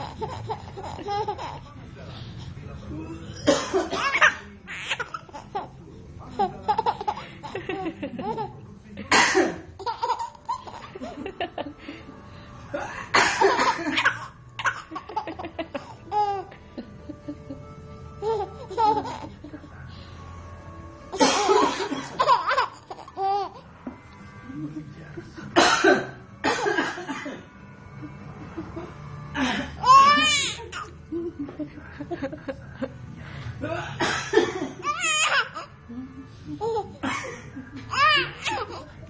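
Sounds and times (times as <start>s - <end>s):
baby giggling and laughing: 0.0s - 1.7s, 6.3s - 8.5s, 9.8s - 11.2s, 13.6s - 16.6s, 18.2s - 19.5s, 21.5s - 23.7s, 29.4s - 31.0s, 34.8s - 35.8s, 37.8s - 39.0s
man coughing: 3.4s - 4.1s, 9.0s - 9.7s, 12.8s - 14.1s, 21.2s - 22.2s, 25.6s - 27.5s, 33.6s - 34.8s, 37.0s - 37.5s.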